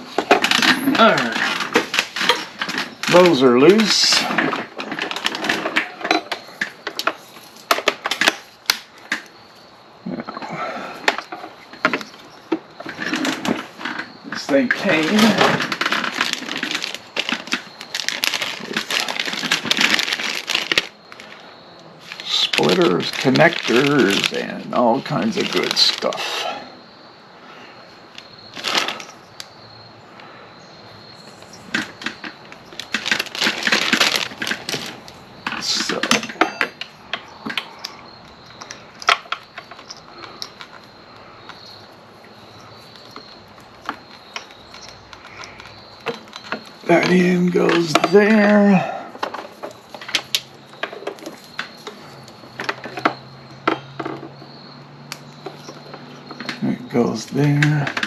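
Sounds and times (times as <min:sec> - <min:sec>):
plastic parts clicking and rattling: 0:00.0 - 0:09.4, 0:10.1 - 0:26.4, 0:28.1 - 0:29.5, 0:31.1 - 0:54.5, 0:55.1 - 0:58.0
packaging rustle: 0:00.1 - 0:09.3, 0:11.0 - 0:26.4, 0:28.1 - 0:29.5, 0:31.1 - 0:53.2.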